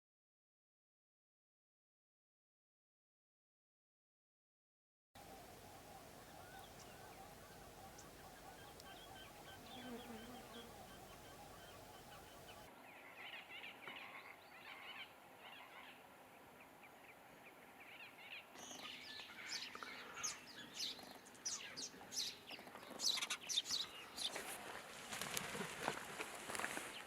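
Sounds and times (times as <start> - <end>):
wild birds chirping and calling: 5.2 - 24.5.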